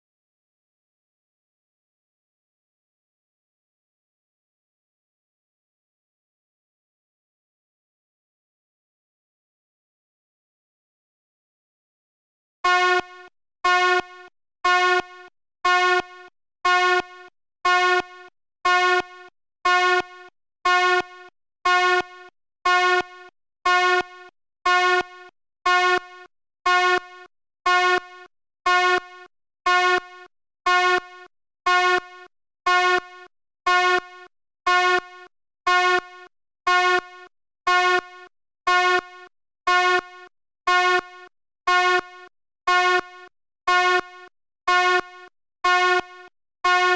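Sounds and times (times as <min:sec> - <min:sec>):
fire alarm beeping: 0:12.6 - 0:46.9.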